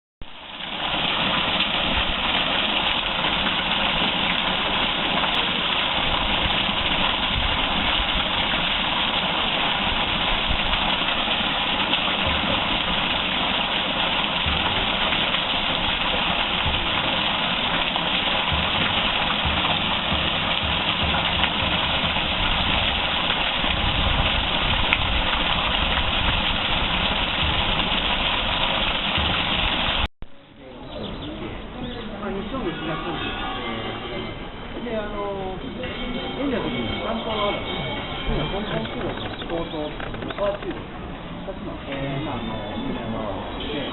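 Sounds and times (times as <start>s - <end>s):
water rushing down waterfall: 0.2s - 30.1s.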